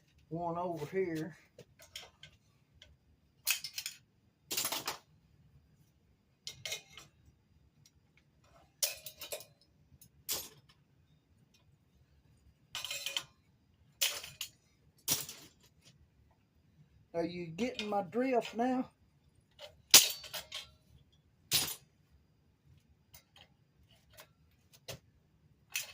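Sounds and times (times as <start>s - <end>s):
metal pliers clanking: 19.6s - 20.8s.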